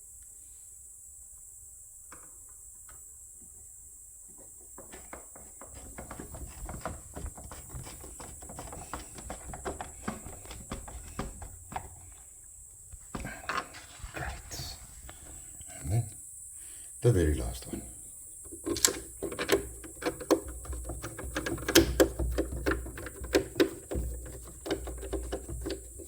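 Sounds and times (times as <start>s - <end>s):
screwdriver clicking and creaking: 18.4s - 26.0s.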